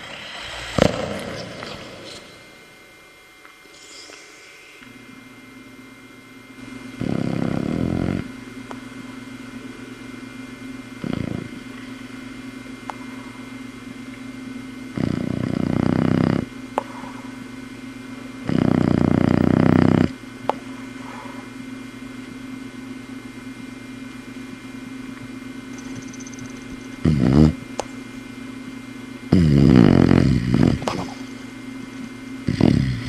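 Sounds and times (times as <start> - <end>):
steady low hum: 0.0 - 33.0
dog snoring: 6.9 - 8.3, 11.0 - 11.6, 14.9 - 17.2, 18.4 - 20.2, 27.0 - 27.8, 29.3 - 31.3, 32.4 - 33.0.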